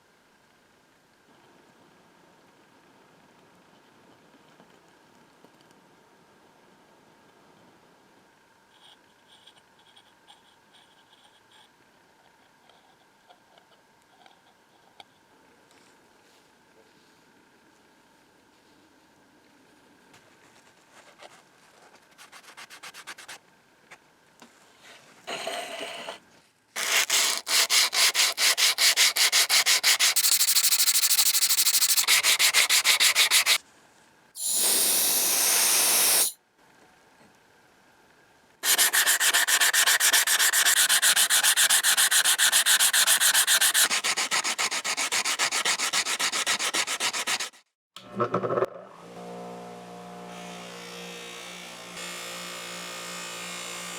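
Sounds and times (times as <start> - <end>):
sandpaper rubbing metal: 26.8 - 33.6, 34.4 - 36.4, 38.6 - 47.6
steady hiss: 34.4 - 36.4.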